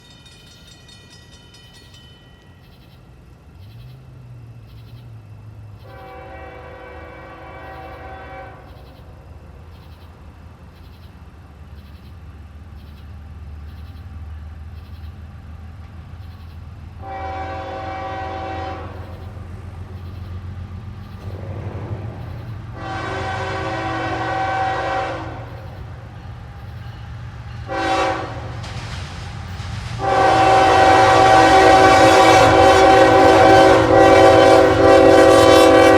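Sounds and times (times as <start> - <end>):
train rumble: 0.0 - 35.9
locomotive air horn blasts: 5.8 - 8.8, 17.0 - 19.1, 22.7 - 25.6, 27.6 - 28.6, 30.0 - 35.9.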